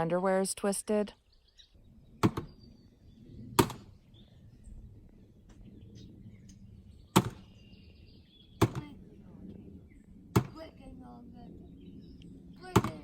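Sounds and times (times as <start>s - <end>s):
faint low rumble: 0.0s - 13.0s
sharp knocks: 2.2s - 2.6s, 3.6s - 4.0s, 7.1s - 7.5s, 8.6s - 9.0s, 10.3s - 10.6s, 12.6s - 13.0s.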